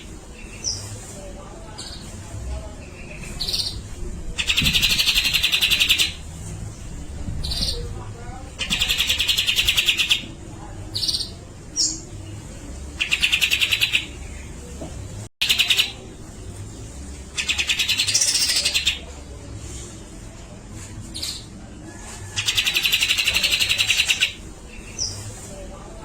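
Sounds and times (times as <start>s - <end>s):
bird buzzy rattling phrases: 7.4s - 10.2s.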